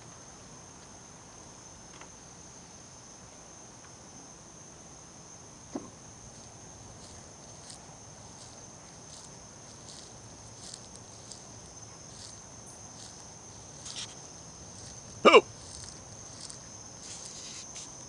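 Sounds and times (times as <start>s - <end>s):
crickets trilling: 0.0s - 18.0s
person hiccuping: 15.2s - 15.5s.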